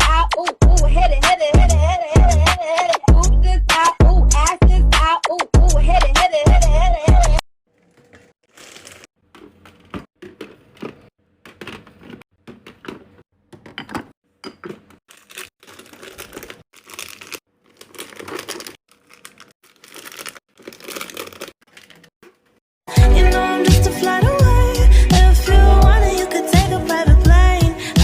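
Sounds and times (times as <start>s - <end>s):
plastic packaging crinkling: 7.7s - 9.9s, 15.1s - 22.6s.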